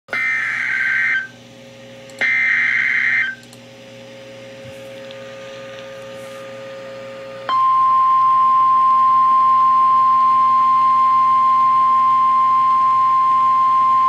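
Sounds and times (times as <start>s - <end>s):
buzzing data tone bursts: 2.2s - 3.5s.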